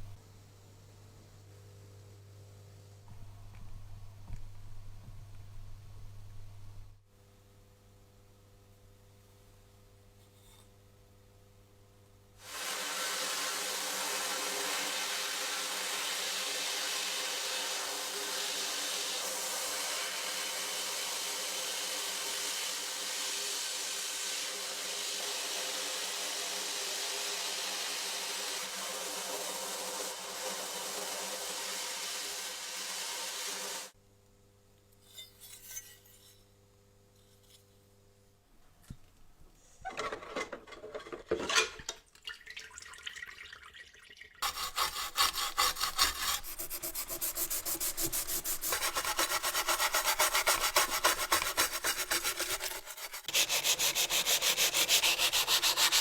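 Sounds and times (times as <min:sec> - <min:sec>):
tool scouring metal hiss: 0:12.4 - 0:34.0, 0:44.4 - 0:56.0.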